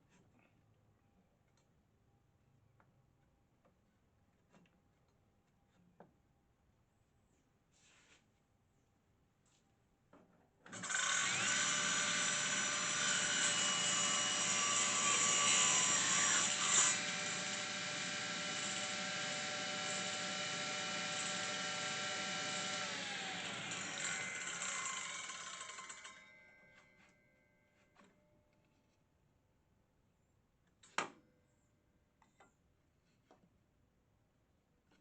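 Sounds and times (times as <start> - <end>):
electric power tool running: 10.7 - 26.2.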